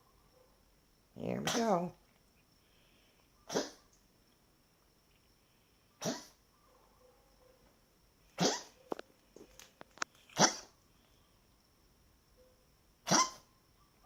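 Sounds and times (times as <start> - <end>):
pet coughing: 3.5 - 3.8, 6.0 - 6.4, 8.4 - 8.8, 10.4 - 10.7, 13.1 - 13.5.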